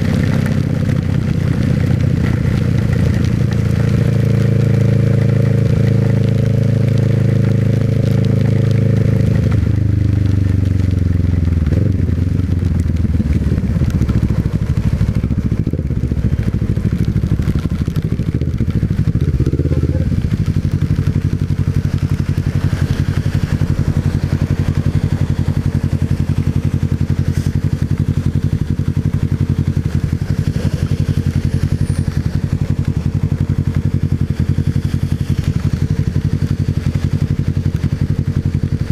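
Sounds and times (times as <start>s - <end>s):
motorcycle engine idling: 12.3s - 38.9s.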